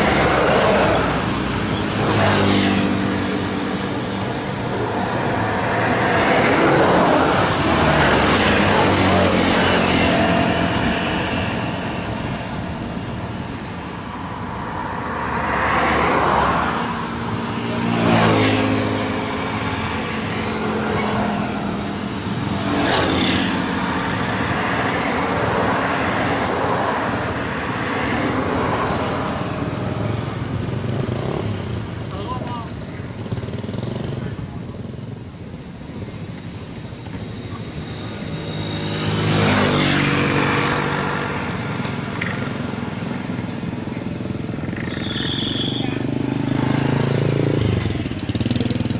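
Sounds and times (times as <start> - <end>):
combine harvester engine droning: 0.0 - 15.0.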